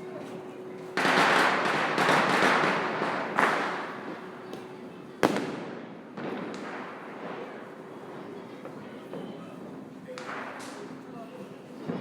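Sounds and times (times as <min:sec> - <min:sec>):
firecracker crackle: 0:00.3 - 0:12.0
loud firecracker bang: 0:01.0 - 0:04.0, 0:05.2 - 0:07.6.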